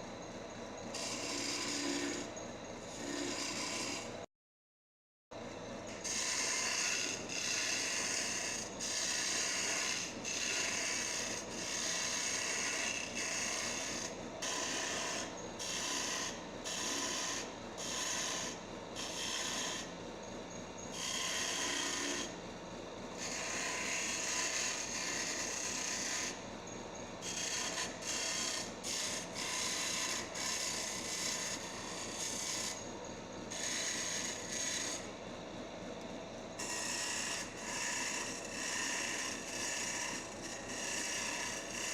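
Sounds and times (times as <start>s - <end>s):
lathe motor hum: 0.8s - 4.1s, 5.9s - 41.9s.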